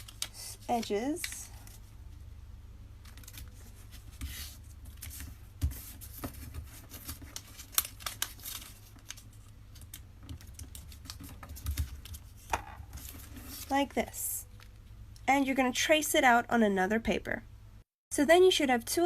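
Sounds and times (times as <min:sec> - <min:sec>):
paper folding and creasing: 0:00.0 - 0:02.1, 0:03.0 - 0:13.9.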